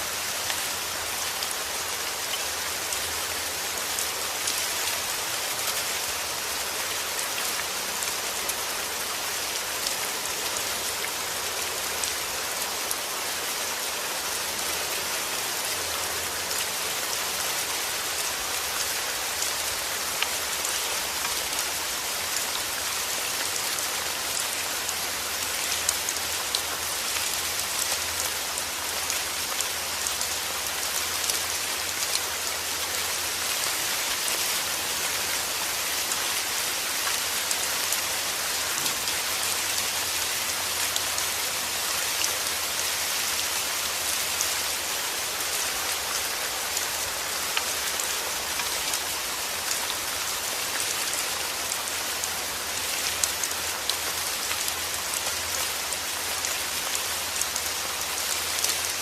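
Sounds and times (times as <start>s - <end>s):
heavy rain: 0.0s - 59.0s.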